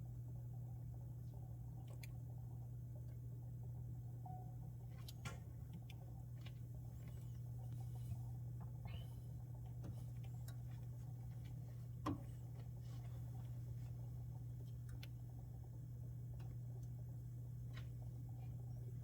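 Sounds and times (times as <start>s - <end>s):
refrigerator humming: 0.0s - 19.0s
light ticks and clicks: 1.2s - 2.4s, 9.4s - 15.5s.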